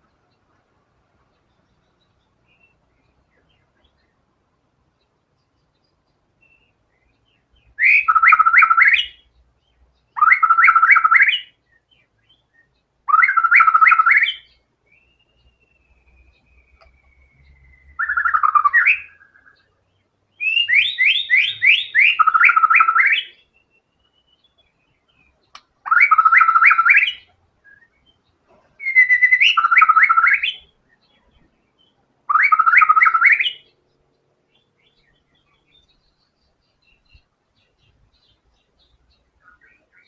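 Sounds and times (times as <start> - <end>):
songbird whistling: 6.4 - 9.3, 10.1 - 19.7, 20.3 - 28.2, 28.8 - 33.8.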